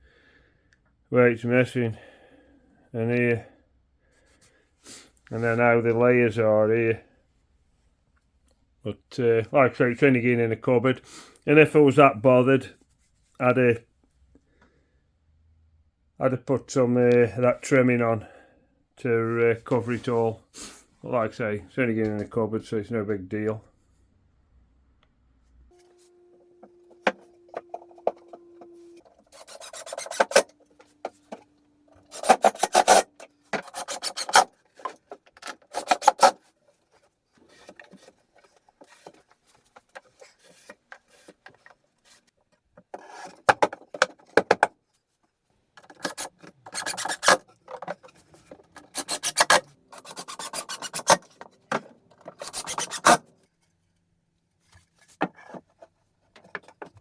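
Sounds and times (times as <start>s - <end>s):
abrasive tool rasping on plywood: 28.9s - 30.6s, 32.0s - 34.5s, 45.9s - 47.4s, 48.8s - 51.4s, 52.3s - 53.2s.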